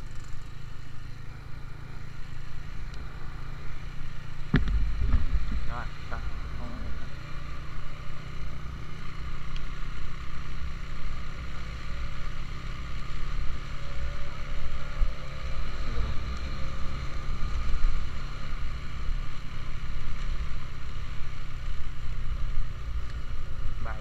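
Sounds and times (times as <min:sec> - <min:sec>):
motorcycle engine drone: 0:00.0 - 0:24.0
wind rushing over microphone: 0:04.5 - 0:07.1.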